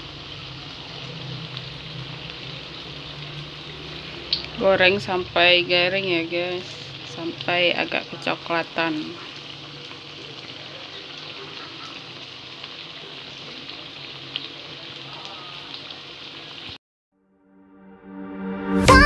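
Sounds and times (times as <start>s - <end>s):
fritters sizzling in hot oil: 0.0s - 16.8s
music: 17.2s - 19.0s.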